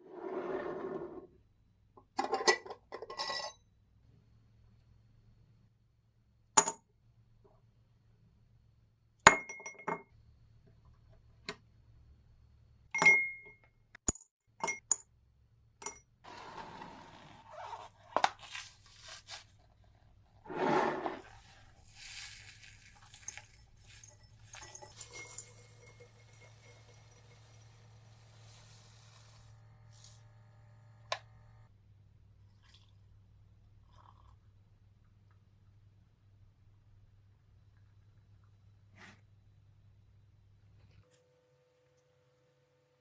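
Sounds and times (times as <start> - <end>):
scraping and rubbing: 20.4 - 24.0.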